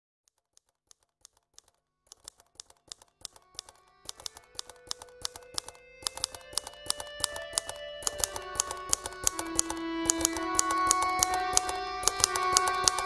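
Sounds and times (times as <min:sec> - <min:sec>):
typewriter keys clacking: 0:00.3 - 0:13.0
soft music: 0:03.3 - 0:13.0.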